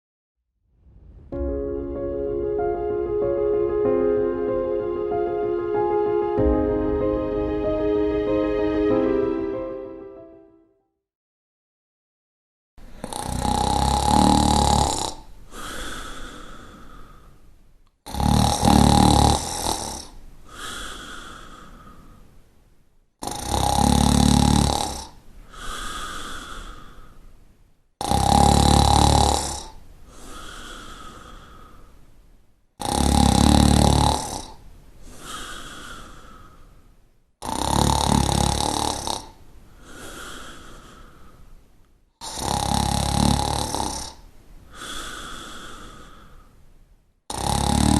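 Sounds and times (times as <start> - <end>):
person snoring loudly: 13.0 - 15.9, 18.1 - 20.1, 23.2 - 25.2, 28.0 - 29.8, 32.8 - 34.6, 37.4 - 40.6, 42.2 - 44.2, 47.3 - 47.9
soft breath out: 25.4 - 27.4, 30.0 - 32.1, 39.7 - 41.6, 44.7 - 46.7.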